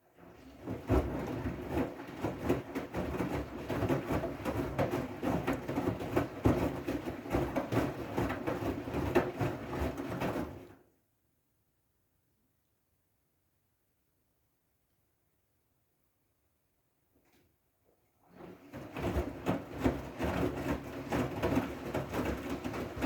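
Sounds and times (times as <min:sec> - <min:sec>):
washing machine knocking and rattling: 0:00.2 - 0:10.8, 0:18.3 - 0:23.0.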